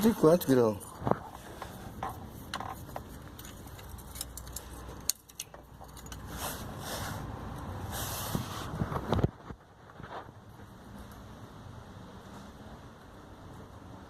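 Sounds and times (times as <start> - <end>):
metal tool clinks and rattles: 2.0 - 6.4.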